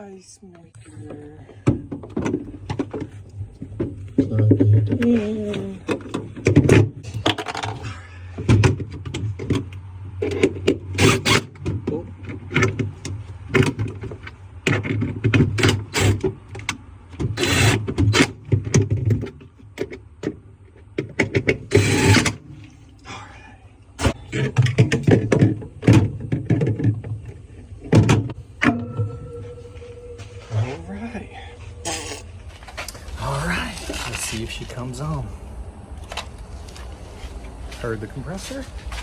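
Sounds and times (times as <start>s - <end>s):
steady low hum: 0.0s - 39.0s
plastic parts clunking and rattling: 1.5s - 22.5s, 24.0s - 28.9s.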